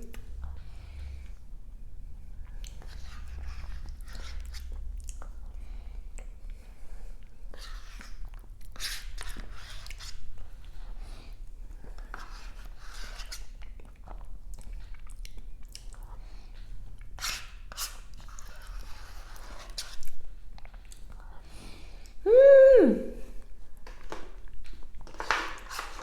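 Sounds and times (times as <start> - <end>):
chewing and biting food: 13.6 - 16.2.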